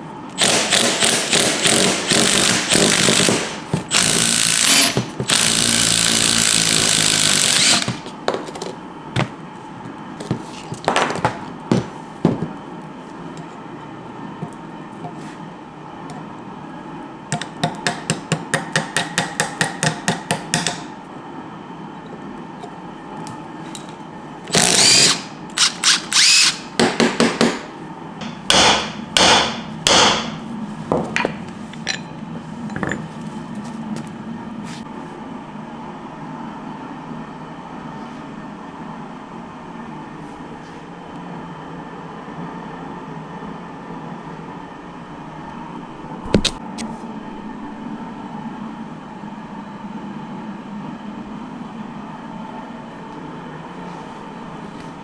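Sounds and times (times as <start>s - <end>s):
impact wrench hammering: 0.4s - 8.1s, 17.4s - 20.9s, 24.5s - 30.4s, 46.3s - 46.6s.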